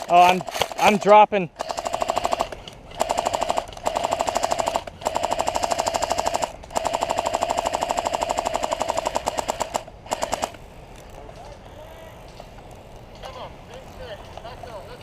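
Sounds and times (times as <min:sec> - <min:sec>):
airsoft gun firing bursts: 0:00.0 - 0:10.6.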